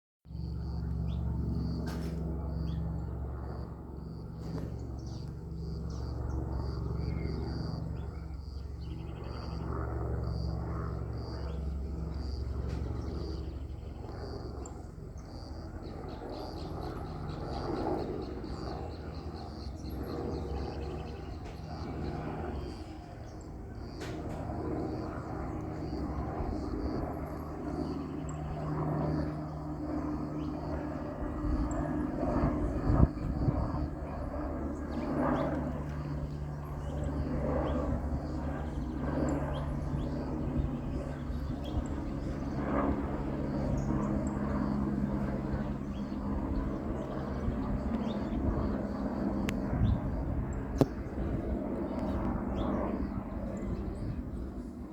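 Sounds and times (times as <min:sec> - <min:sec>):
helicopter engine and rotors humming: 0:00.3 - 0:54.9.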